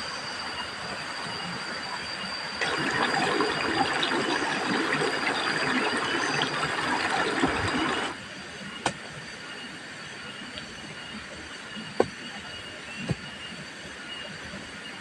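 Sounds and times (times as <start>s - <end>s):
water pouring and splashing: 2.6s - 8.2s.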